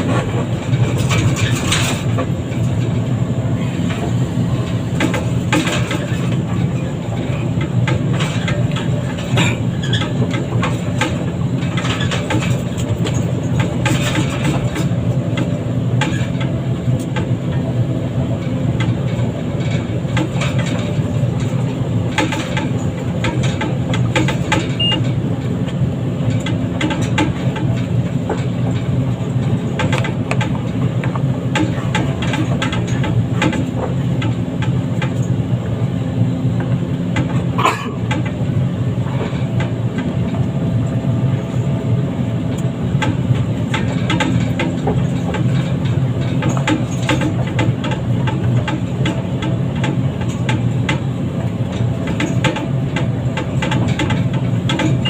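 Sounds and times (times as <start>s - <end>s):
diesel engine drone: 0.0s - 55.0s
metallic clanks and knocks: 3.8s - 17.6s, 18.7s - 35.3s, 42.5s - 55.0s.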